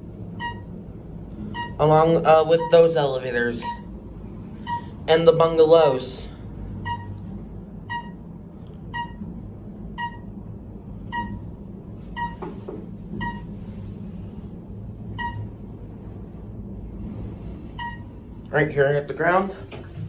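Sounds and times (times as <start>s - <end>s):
elevator car hum: 0.0s - 20.0s
short electronic beeps: 0.4s - 0.7s, 1.5s - 1.8s, 2.6s - 2.9s, 3.6s - 3.9s, 4.6s - 5.0s, 6.8s - 7.2s, 7.9s - 8.2s, 9.0s - 9.2s, 10.0s - 10.3s, 11.1s - 11.4s, 12.1s - 12.4s, 15.2s - 15.5s, 17.8s - 18.1s.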